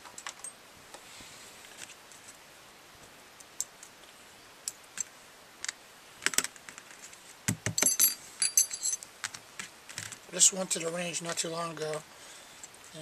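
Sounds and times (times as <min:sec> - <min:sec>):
metallic ring of parts knocking: 0:07.8 - 0:09.0
steel parts clicking and clacking: 0:07.8 - 0:09.0.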